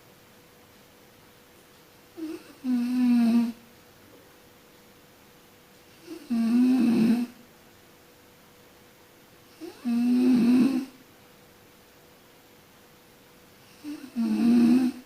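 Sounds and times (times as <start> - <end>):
person snoring: 2.2 - 3.6, 6.0 - 7.4, 9.6 - 10.9, 13.7 - 15.0.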